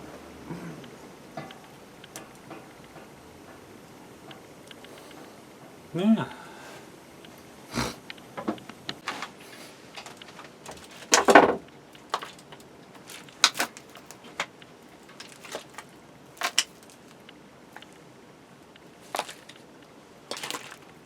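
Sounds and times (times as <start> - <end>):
objects clicking and knocking: 8.1 - 18.0, 18.7 - 21.0
scraping rustle: 9.0 - 18.0, 18.8 - 21.0.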